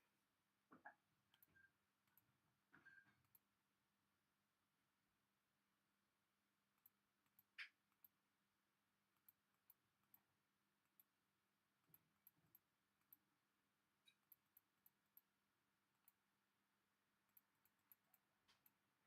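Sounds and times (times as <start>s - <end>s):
computer mouse clicks: 0.8s - 3.5s, 6.8s - 8.2s, 9.1s - 11.2s, 11.8s - 13.3s, 14.0s - 16.3s, 17.2s - 18.9s.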